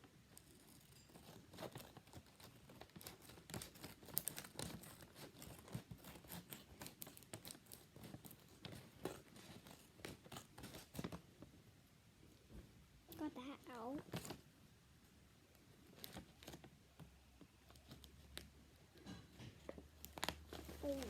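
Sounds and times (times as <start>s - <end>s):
plastic packaging rustling: 1.0s - 11.3s, 19.6s - 21.0s
scissors snipping plastic: 1.2s - 11.2s.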